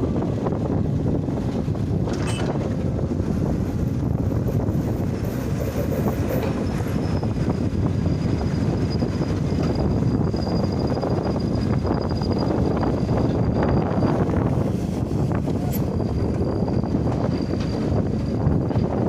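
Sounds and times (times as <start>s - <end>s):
heavy machinery engine rumble: 0.0s - 19.0s
thin high squeal: 4.5s - 18.6s.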